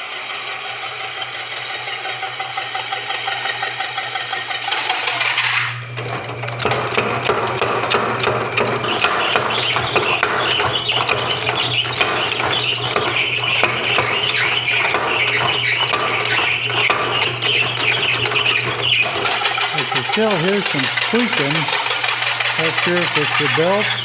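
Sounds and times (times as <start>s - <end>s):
electric motor hum: 17.4s - 24.0s
high squeal: 17.4s - 24.0s
power hammer blows: 19.0s - 24.0s.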